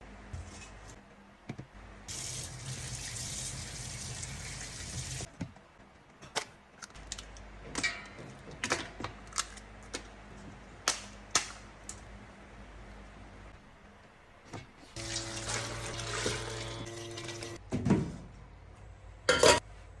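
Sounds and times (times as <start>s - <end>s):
water running: 2.1s - 5.3s, 15.0s - 17.6s
kitchen clicks and knocks: 7.6s - 9.2s, 19.3s - 19.6s.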